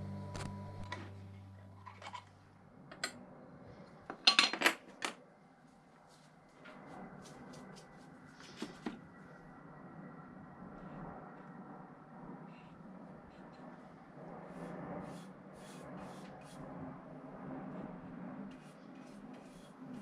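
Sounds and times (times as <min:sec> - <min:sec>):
instrumental music: 0:00.0 - 0:02.0.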